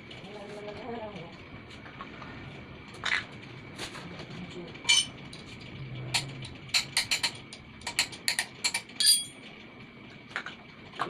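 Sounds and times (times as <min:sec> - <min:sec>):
metal tools clinking: 0:04.9 - 0:05.1, 0:08.7 - 0:09.4.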